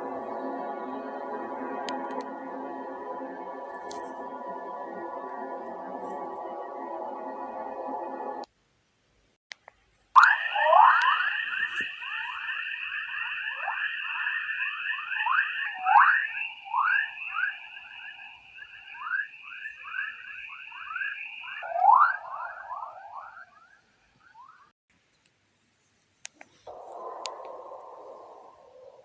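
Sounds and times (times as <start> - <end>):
steady high-pitched hiss: 24.9 - 29.0.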